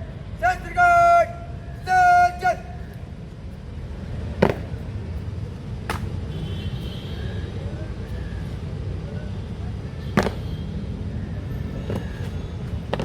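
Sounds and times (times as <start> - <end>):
low outdoor rumble: 0.0 - 13.0
person shouting drill command: 0.4 - 2.8.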